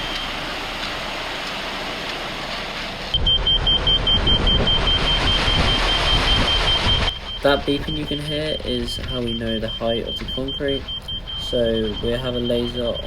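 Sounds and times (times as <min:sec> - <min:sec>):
loud low rumble: 0:03.1 - 0:10.6
rapid high beeps: 0:03.1 - 0:13.0
steady high tone: 0:03.2 - 0:13.0.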